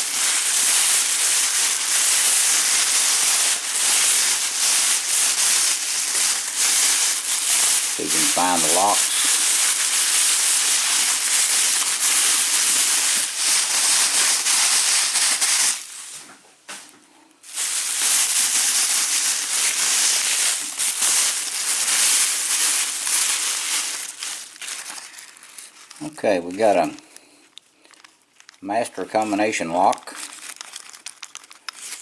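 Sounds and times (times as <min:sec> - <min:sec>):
packing material rustling and crinkling: 0:00.0 - 0:32.0.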